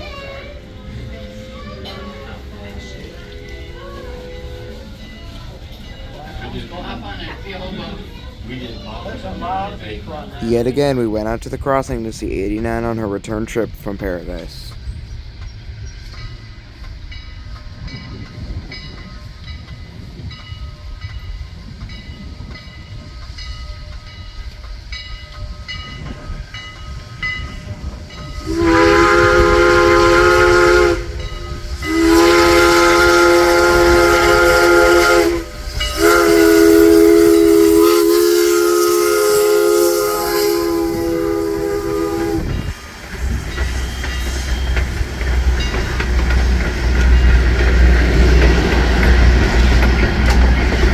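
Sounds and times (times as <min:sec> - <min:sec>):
steam locomotive chime whistle: 0:00.0 - 0:07.1, 0:17.1 - 0:46.0
low rumble of train: 0:00.0 - 0:50.9.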